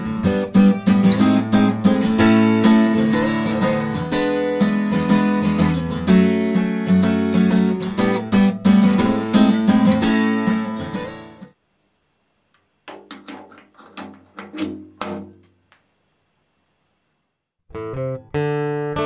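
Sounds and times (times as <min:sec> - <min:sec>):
acoustic guitar strumming chords: 0:00.0 - 0:11.5, 0:17.7 - 0:19.0.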